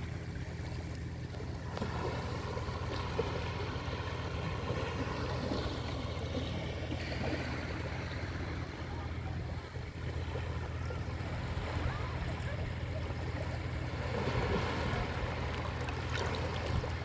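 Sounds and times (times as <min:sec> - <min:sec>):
constant low rumble: 0:00.0 - 0:17.0
sea waves washing onto shore: 0:01.0 - 0:17.0
distant voices of people: 0:03.8 - 0:17.0.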